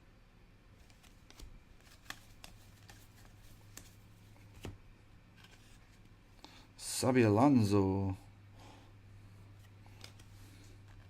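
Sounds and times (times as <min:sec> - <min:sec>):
trading cards flipped by hand: 0:00.8 - 0:04.8, 0:05.4 - 0:06.1, 0:09.6 - 0:11.0.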